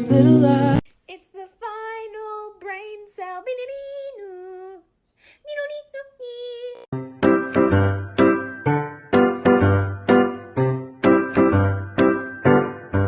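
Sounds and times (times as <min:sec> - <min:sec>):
music with keyboard and bass: 0:00.0 - 0:00.8, 0:06.9 - 0:13.0
high-pitched voice singing: 0:00.0 - 0:04.9, 0:05.5 - 0:06.9.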